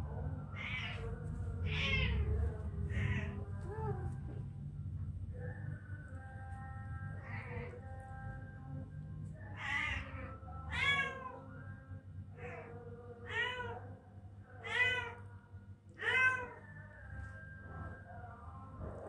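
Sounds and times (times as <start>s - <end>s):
kitten mewing: 0.5s - 4.2s, 15.9s - 16.7s.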